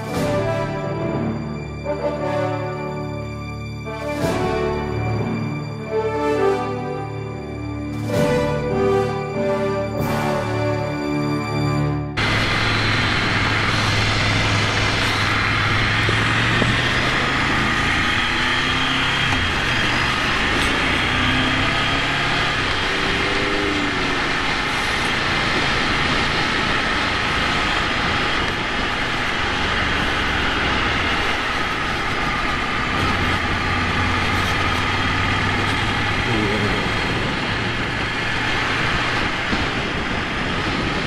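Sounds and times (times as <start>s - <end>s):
motorcycle engine running: 12.2s - 41.0s
wind noise: 12.2s - 41.0s.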